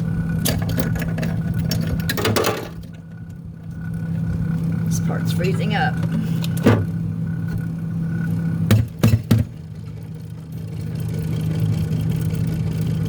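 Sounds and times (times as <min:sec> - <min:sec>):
electric motor hum: 0:00.0 - 0:13.0
sharp knocks: 0:08.7 - 0:09.5.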